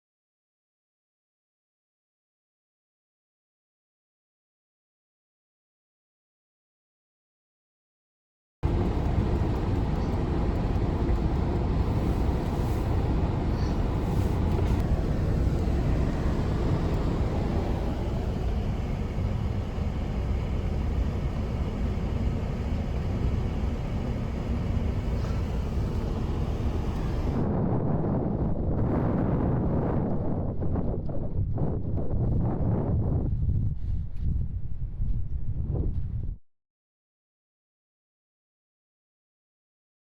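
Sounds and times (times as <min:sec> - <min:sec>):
loud low rumbling: 0:08.6 - 0:36.3.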